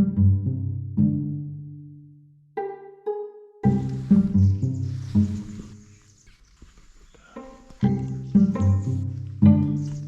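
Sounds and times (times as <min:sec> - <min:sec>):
plucked string notes: 0:02.6 - 0:05.4, 0:07.4 - 0:10.0
background music with a beat: 0:07.8 - 0:10.0.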